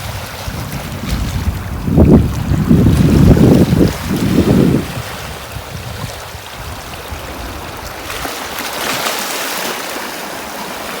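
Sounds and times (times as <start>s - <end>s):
wind rumble on microphone: 0.0s - 8.6s
sea waves breaking on beach: 0.0s - 11.0s.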